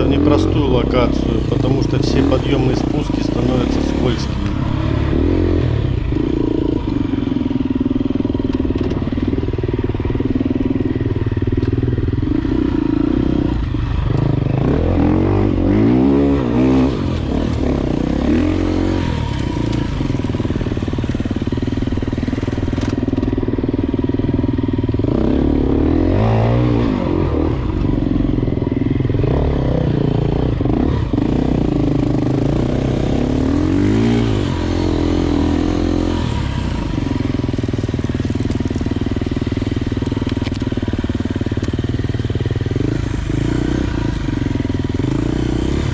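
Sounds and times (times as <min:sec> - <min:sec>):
dirt bike engine revving: 0:00.0 - 0:09.3, 0:12.2 - 0:45.9.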